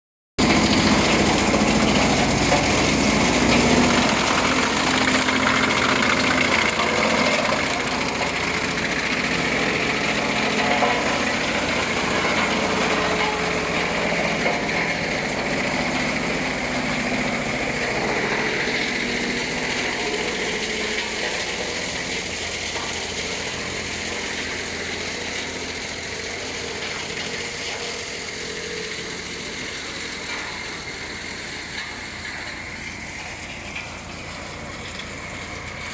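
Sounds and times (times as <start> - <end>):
wood chipper running: 0.4 - 35.9.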